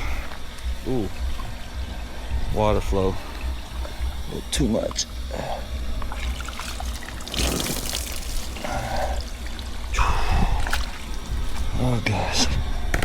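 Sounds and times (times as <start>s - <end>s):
running water pouring and splashing: 6.1s - 10.0s.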